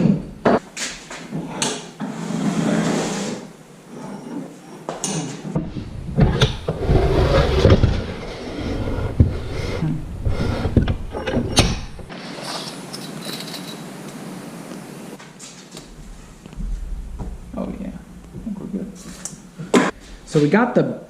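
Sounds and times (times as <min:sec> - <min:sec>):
heavy vise clunking: 0:08.9 - 0:12.1
low scraping rumble: 0:15.9 - 0:20.4.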